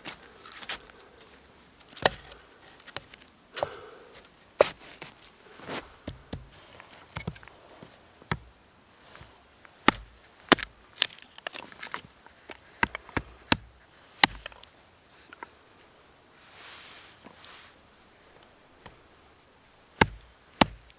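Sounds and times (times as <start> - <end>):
wood chopping knocks: 6.1 - 6.5, 8.3 - 8.5, 9.8 - 11.2, 12.8 - 14.6, 20.0 - 20.9.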